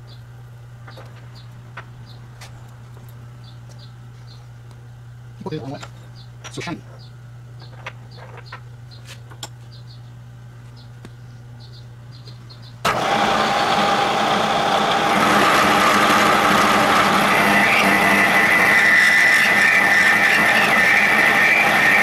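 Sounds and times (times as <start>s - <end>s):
low machine hum: 0.0s - 22.0s
milling machine cutting steel: 12.9s - 22.0s.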